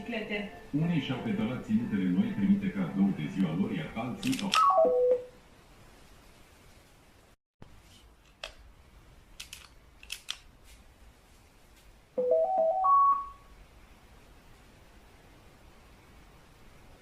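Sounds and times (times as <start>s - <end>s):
television power-on jingle: 0.0s - 5.3s.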